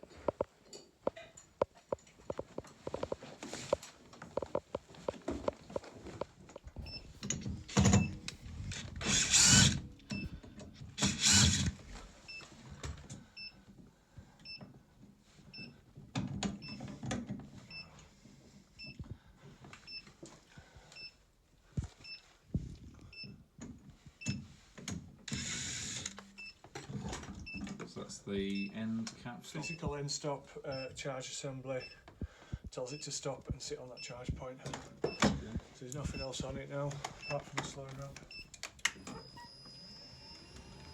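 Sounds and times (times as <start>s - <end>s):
mechanical clattering and whirring: 7.2s - 10.3s, 11.0s - 11.8s
short electronic beeps: 36.1s - 36.4s.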